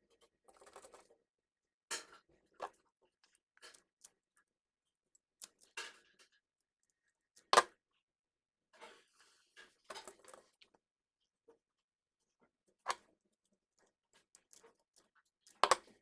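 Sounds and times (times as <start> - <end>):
small tool clicks and snips: 5.4 - 5.9, 14.4 - 14.7, 15.5 - 16.0.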